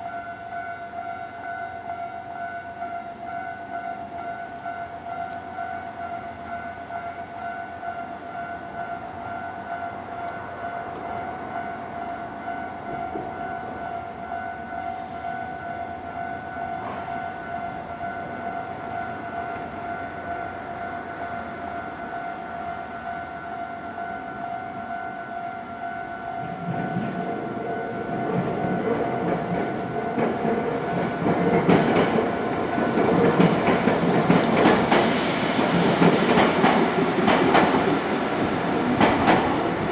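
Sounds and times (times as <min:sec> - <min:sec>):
train approaching: 0:00.0 - 0:39.9
wheels clacking over rail joints: 0:28.1 - 0:39.9.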